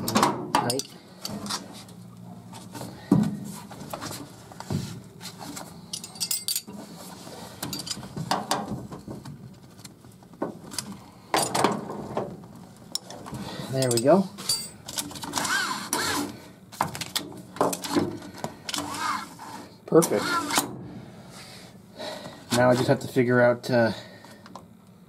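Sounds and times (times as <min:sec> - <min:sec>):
metal clinks of wrenches and bolts: 0:00.6 - 0:01.4, 0:05.9 - 0:06.7, 0:07.7 - 0:08.1, 0:13.7 - 0:15.1.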